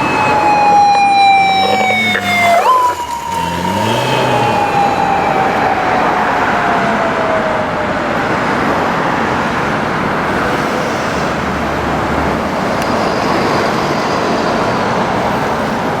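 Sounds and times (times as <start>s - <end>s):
motorcycle siren winding down: 0.0s - 8.1s
traffic and road noise: 0.0s - 16.0s.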